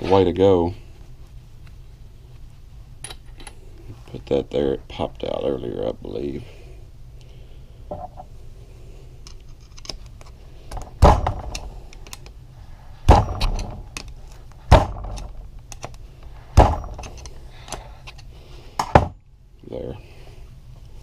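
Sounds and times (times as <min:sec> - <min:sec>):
heavy knocks on workbench: 0:11.0 - 0:11.5, 0:14.7 - 0:15.2, 0:16.6 - 0:17.0, 0:18.8 - 0:19.2.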